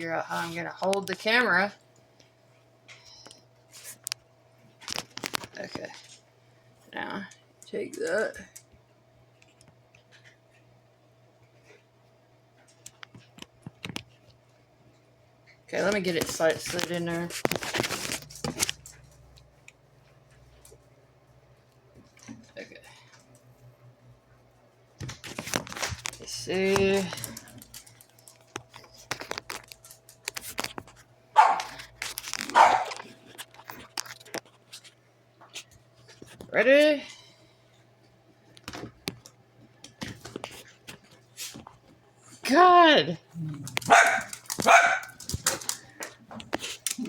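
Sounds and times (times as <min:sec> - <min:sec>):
dog barking: 0:31.4 - 0:31.8, 0:32.5 - 0:33.0, 0:43.9 - 0:45.2.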